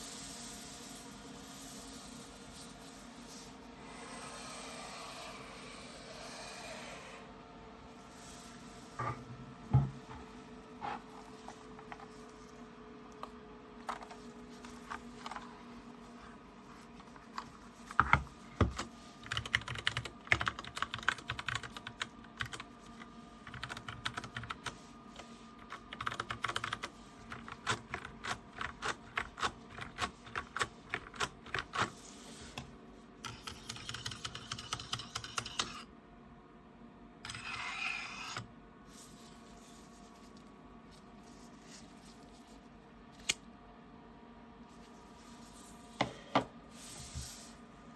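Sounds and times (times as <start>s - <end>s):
mechanical keyboard typing: 18.0s - 22.8s, 23.4s - 24.8s, 25.6s - 32.0s, 33.2s - 35.8s.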